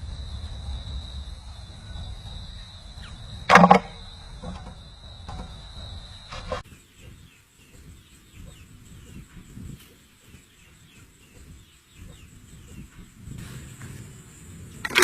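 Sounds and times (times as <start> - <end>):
low rumble: 0.0 - 6.6
bird chirping: 1.8 - 13.4.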